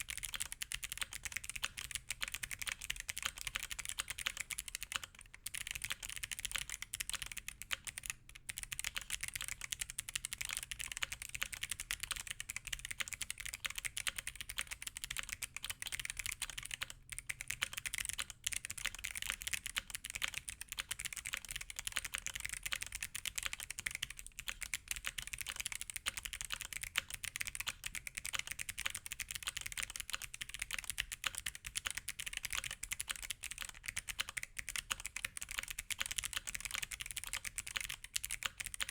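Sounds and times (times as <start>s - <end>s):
clicky mechanical keyboard typing: 0.0s - 38.9s.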